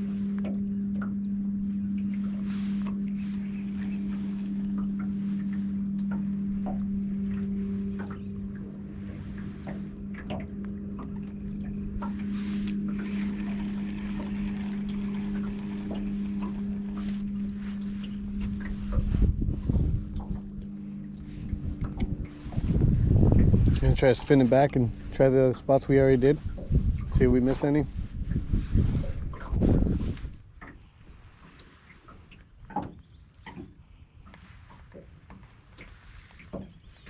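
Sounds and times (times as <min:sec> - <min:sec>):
boat motor humming: 0:00.0 - 0:37.0
water splashes: 0:01.9 - 0:37.0
low knocks and rumbles: 0:03.8 - 0:30.4.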